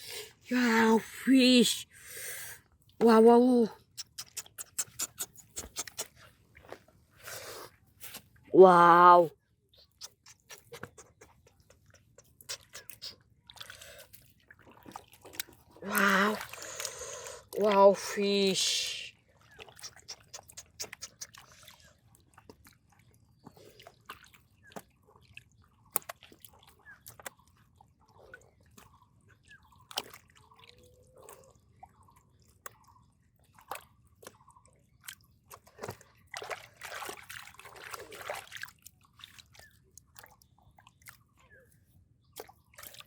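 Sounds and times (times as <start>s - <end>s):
mud squelching: 3.0s - 41.3s, 42.2s - 43.0s
water drips: 8.7s - 41.2s
water splashing: 9.8s - 22.8s, 35.1s - 40.4s.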